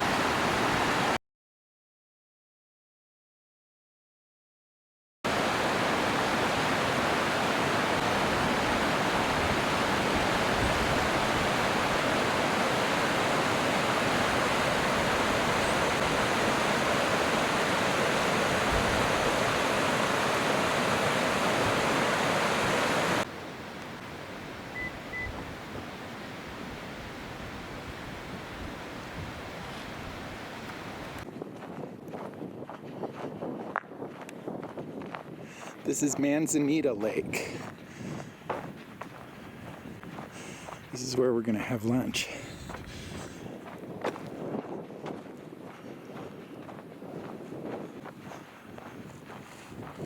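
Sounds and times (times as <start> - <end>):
waterfall rushing: 5.3 - 31.2
outdoor hiss: 15.7 - 26.2.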